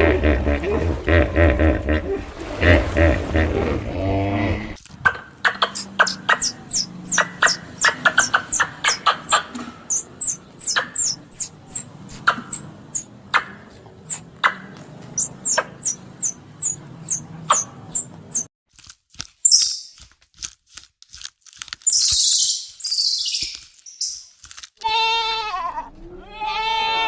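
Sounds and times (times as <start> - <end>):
small animal high-pitched chirps: 5.4 - 14.6, 15.2 - 18.5, 19.4 - 20.0, 21.9 - 24.3.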